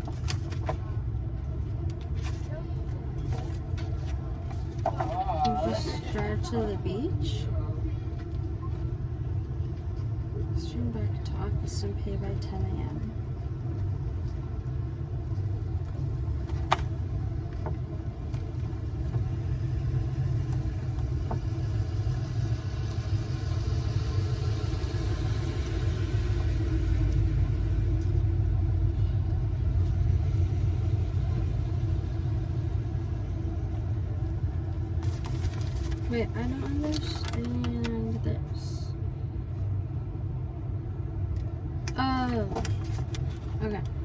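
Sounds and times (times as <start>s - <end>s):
motor vehicle rumbling: 0.0s - 44.0s.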